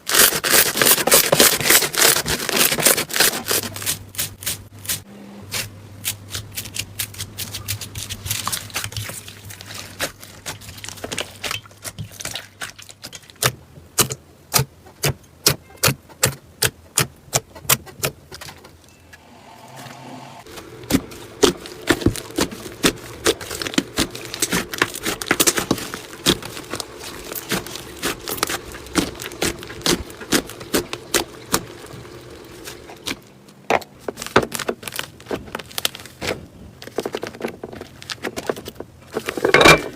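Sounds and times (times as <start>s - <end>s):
low steady hum: 18.8s - 34.2s.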